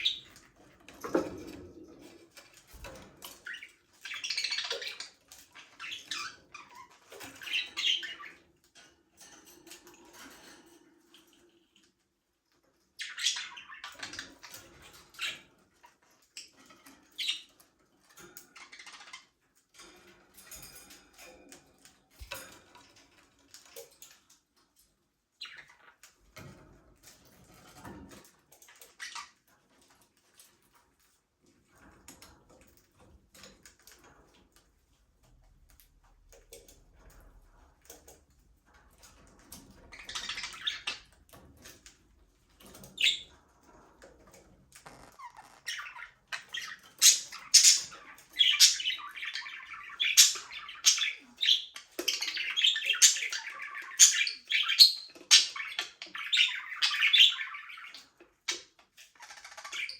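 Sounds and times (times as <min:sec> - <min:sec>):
budgerigars chirping: 0:03.4 - 0:08.4, 0:45.2 - 0:58.1.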